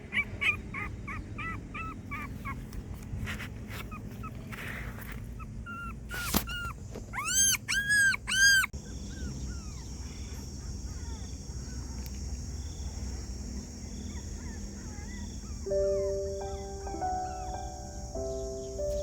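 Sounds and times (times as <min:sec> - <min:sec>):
dog crying loudly: 0:00.0 - 0:02.7, 0:05.4 - 0:11.2
dog whimpering: 0:00.0 - 0:02.7, 0:05.4 - 0:12.0, 0:14.0 - 0:17.5.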